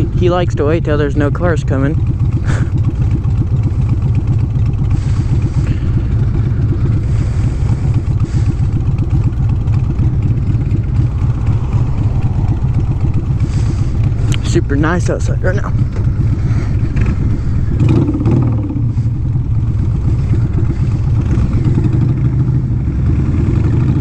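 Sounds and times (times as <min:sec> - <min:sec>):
motorbike engine running: 0:00.0 - 0:24.0.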